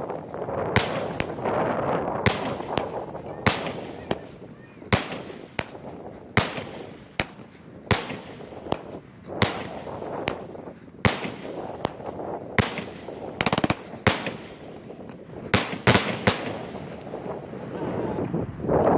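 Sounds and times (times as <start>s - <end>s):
rattle of small fireworks reports: 0.0s - 15.1s
fireworks bangs: 0.0s - 18.4s.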